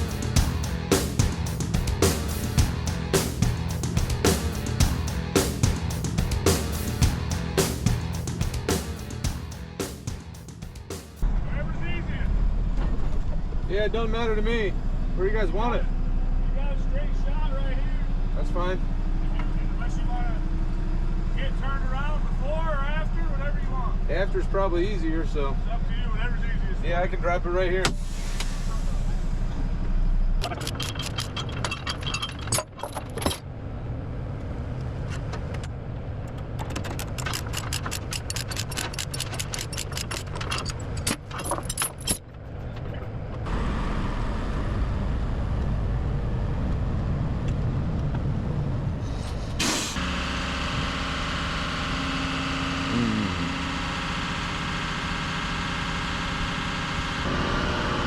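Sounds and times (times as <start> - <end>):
engine whines: 0.0 - 31.9, 42.4 - 58.0
diesel engine running: 0.0 - 32.6, 33.4 - 58.0
air brake hiss: 27.9 - 30.0, 49.0 - 50.0
rattle of metallic clicks: 30.4 - 33.4, 35.1 - 43.4.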